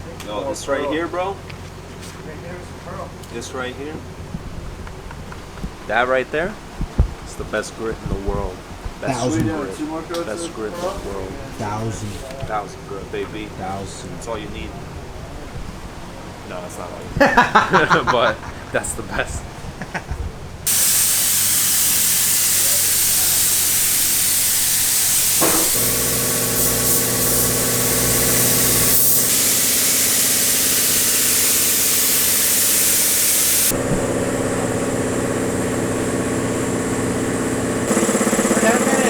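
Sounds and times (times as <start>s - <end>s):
air compressor motor humming: 20.7s - 39.0s
compressed air hissing: 20.7s - 39.0s.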